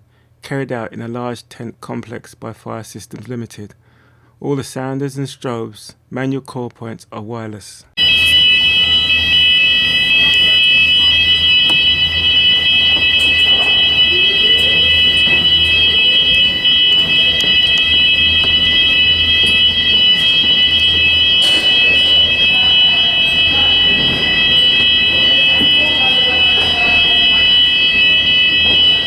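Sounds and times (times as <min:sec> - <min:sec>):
fire alarm sounders high-pitched tone: 0:08.0 - 0:29.0.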